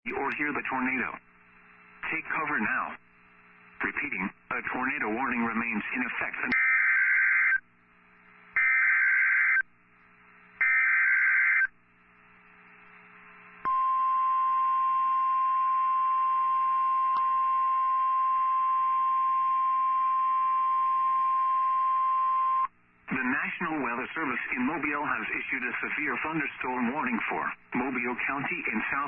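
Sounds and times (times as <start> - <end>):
steady warning alarm tone: 8.6 - 9.6, 10.6 - 11.7.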